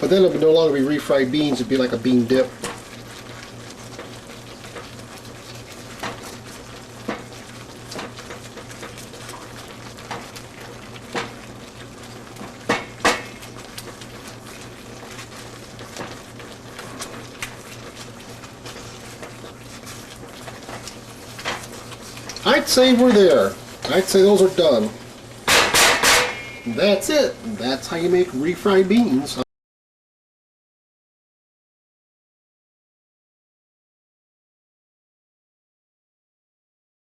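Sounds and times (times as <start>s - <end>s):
beans sizzling: 0.0s - 29.4s
utensil knocking in frying pan: 7.0s - 7.3s, 11.1s - 11.4s, 12.4s - 13.5s, 25.4s - 26.7s.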